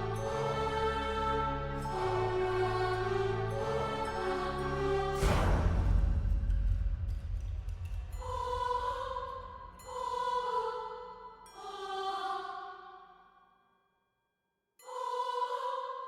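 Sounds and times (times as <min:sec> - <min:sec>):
eerie choir-like chords: 0:00.0 - 0:13.1, 0:14.8 - 0:16.0
deep rumble: 0:05.1 - 0:09.8.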